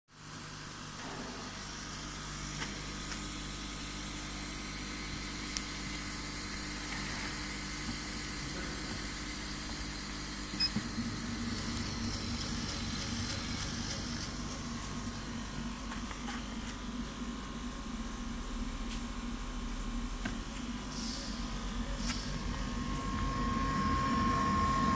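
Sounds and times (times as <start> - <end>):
laser cutting machine hum: 0.3 - 6.9, 7.5 - 24.9
high whine: 10.6 - 24.9.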